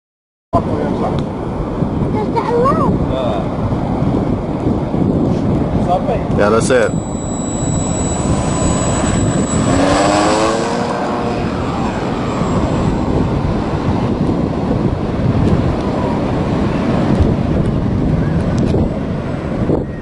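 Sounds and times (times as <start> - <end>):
model plane motor whining: 6.7 - 13.0.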